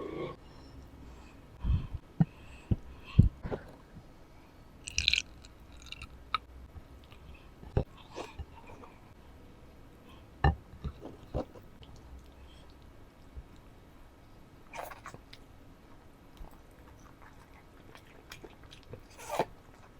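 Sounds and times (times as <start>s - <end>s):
person chewing food: 4.8s - 8.9s, 16.3s - 19.9s.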